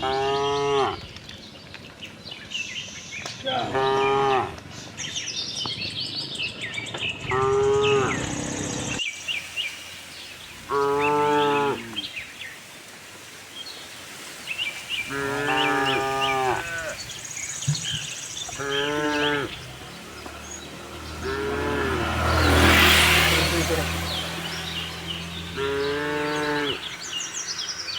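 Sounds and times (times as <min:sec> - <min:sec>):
cattle mooing: 0:00.0 - 0:01.0, 0:03.6 - 0:04.6, 0:07.3 - 0:08.3, 0:10.7 - 0:12.0, 0:15.1 - 0:17.0, 0:18.5 - 0:23.9, 0:25.5 - 0:26.9
small birds chirping: 0:00.0 - 0:27.9.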